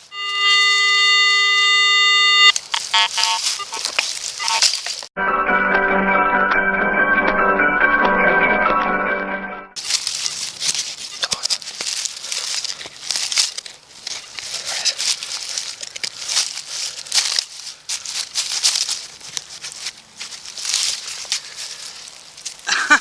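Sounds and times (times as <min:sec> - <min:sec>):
dry leaves crunching and rustling: 0:02.5 - 0:05.1, 0:09.8 - 0:22.7.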